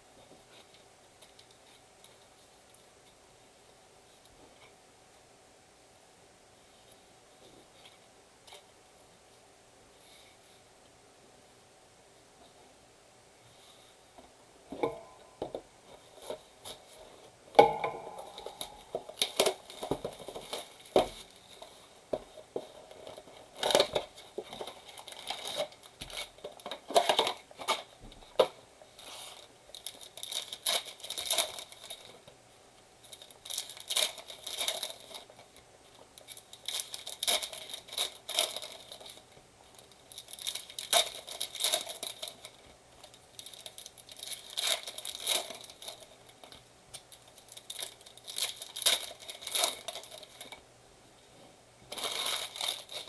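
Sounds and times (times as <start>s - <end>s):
packaging torn and crinkled: 18.2s - 21.0s, 23.6s - 27.9s, 29.4s - 32.2s, 33.1s - 35.4s, 36.2s - 50.6s, 51.9s - 53.0s.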